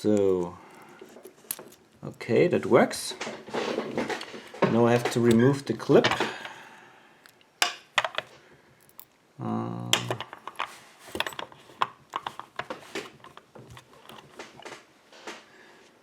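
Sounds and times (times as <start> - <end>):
person humming: 9.4 - 10.1.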